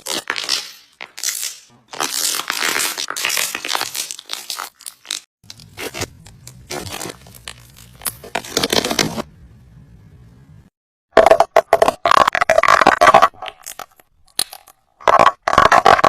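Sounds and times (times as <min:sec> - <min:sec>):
low hum: 0:05.5 - 0:10.7.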